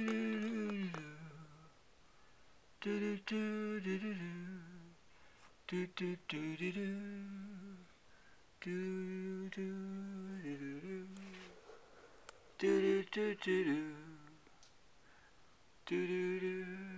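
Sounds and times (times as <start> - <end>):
person humming a slow tune: 0.0 - 1.8, 2.8 - 5.0, 5.7 - 7.9, 8.6 - 11.5, 12.6 - 14.5, 15.8 - 16.9.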